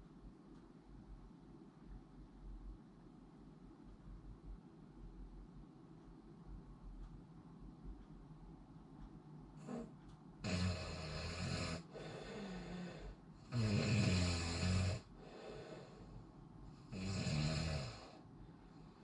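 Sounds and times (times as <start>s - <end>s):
soft breathing: 9.5s - 10.2s, 11.5s - 14.0s, 14.8s - 17.1s, 17.8s - 19.0s
person snoring: 9.6s - 16.1s, 16.8s - 18.2s.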